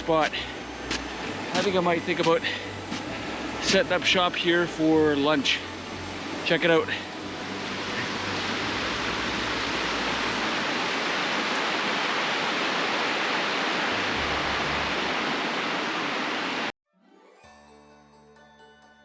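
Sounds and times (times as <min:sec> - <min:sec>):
river water rushing: 0:00.0 - 0:16.7.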